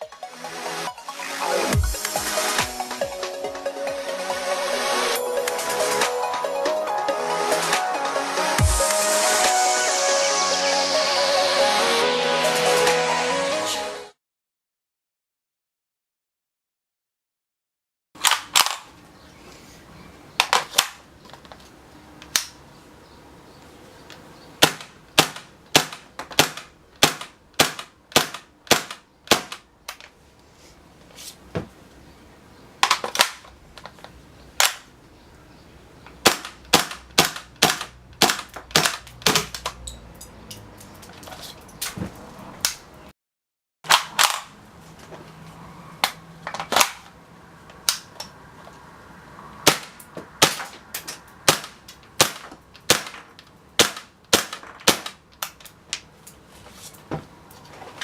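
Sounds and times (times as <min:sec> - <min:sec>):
airsoft gun single shots: 0:24.6 - 0:29.6, 0:36.2 - 0:39.6, 0:49.6 - 0:50.7.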